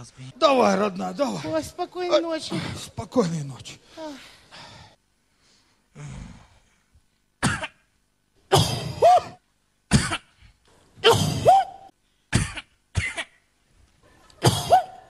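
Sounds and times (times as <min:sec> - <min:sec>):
woman coughing: 0:07.4 - 0:07.8, 0:08.5 - 0:10.4, 0:11.0 - 0:13.4, 0:14.4 - 0:15.0.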